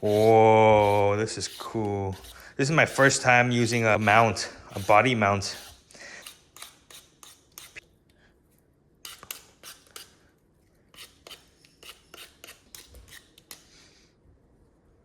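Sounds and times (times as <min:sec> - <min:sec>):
scraping potatoes by hand: 0:00.0 - 0:07.8.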